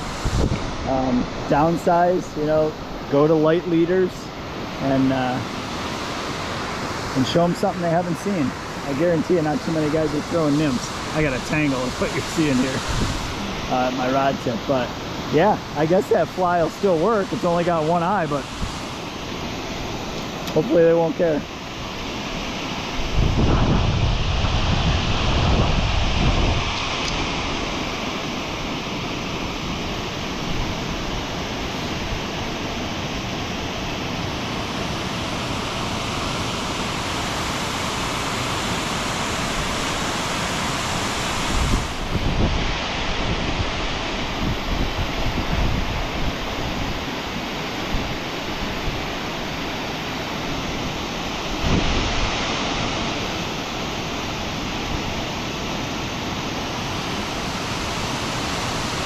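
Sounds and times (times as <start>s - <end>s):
wind buffeting microphone: 0.0s - 2.5s, 8.3s - 14.3s, 22.9s - 28.1s, 41.4s - 47.1s, 50.7s - 53.4s
fast-flowing water rushing: 0.0s - 59.0s.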